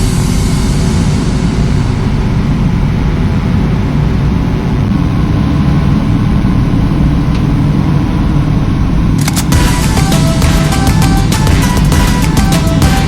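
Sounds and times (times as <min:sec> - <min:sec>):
low rumble: 0:00.0 - 0:13.0
music: 0:09.5 - 0:13.0.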